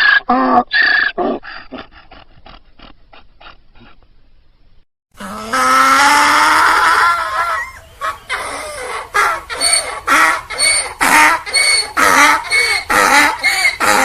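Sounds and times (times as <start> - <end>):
donkey braying: 5.2 - 14.0.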